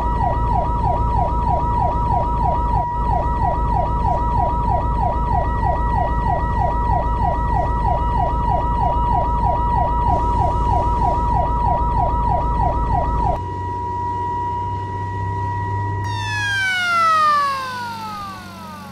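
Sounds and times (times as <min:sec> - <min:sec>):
low hum: 0:16.1 - 0:18.9
siren yelping: 0:16.1 - 0:18.9
steady high tone: 0:16.1 - 0:18.9.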